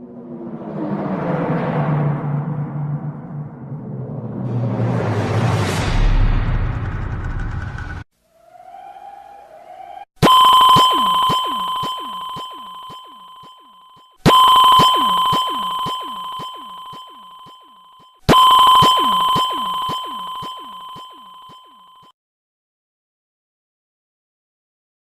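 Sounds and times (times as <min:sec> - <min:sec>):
bell-like tone ringing: 0:10.2 - 0:22.2.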